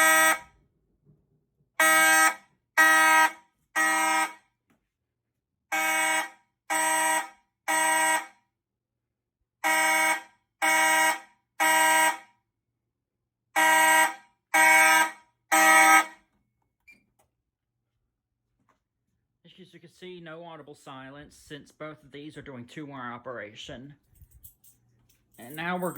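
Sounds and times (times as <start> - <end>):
fire alarm horns blasting: 0.0 - 0.6, 1.8 - 4.6, 5.7 - 8.6, 9.6 - 12.5, 13.5 - 16.3.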